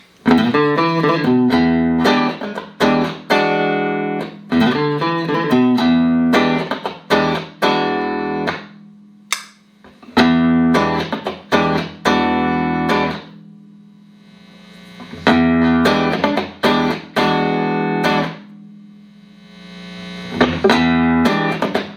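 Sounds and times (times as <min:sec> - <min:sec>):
clean electric guitar chords: 0:00.0 - 0:18.9, 0:20.3 - 0:21.9.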